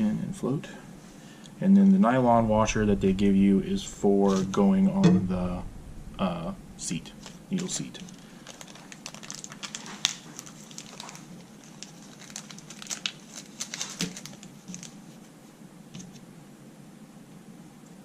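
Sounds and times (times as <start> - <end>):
crinkling: 6.8 - 16.3.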